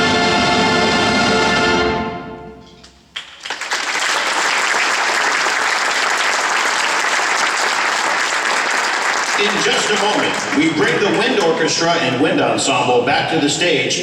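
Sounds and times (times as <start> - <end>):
audience applauding: 3.1 - 12.0.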